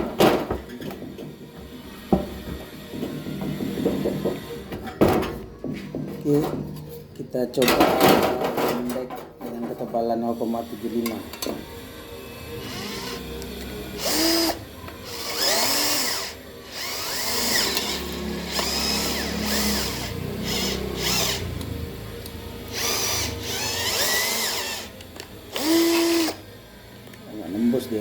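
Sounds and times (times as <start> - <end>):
drill cutting steel sheet: 12.5 - 21.7, 22.7 - 26.4.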